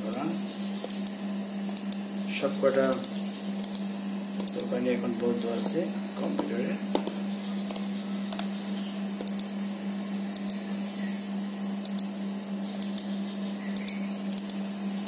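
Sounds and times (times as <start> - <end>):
steady low hum: 0.0 - 15.0
computer keys clicking: 0.8 - 2.0, 2.9 - 4.7, 9.2 - 9.5, 10.4 - 10.6, 11.8 - 12.1, 12.8 - 13.1, 13.7 - 14.6.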